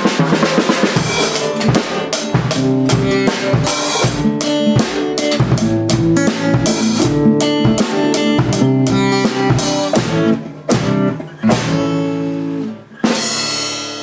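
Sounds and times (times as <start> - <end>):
drum kit: 0.0 - 14.0
guitar: 0.0 - 14.0.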